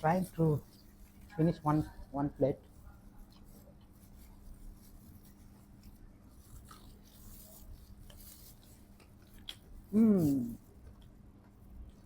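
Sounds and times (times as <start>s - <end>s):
quiet chewing: 2.6s - 12.0s.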